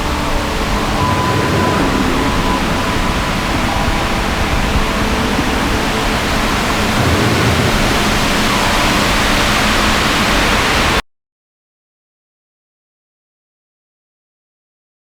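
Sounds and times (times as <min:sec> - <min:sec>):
loud rushing noise: 0:00.0 - 0:11.0.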